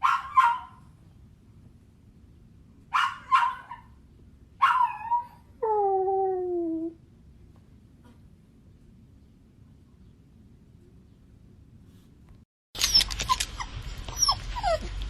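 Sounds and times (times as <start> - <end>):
dog barking and yipping: 0.0 - 0.8, 2.9 - 4.0, 4.6 - 5.4, 12.8 - 15.0
dog whining: 12.8 - 15.0.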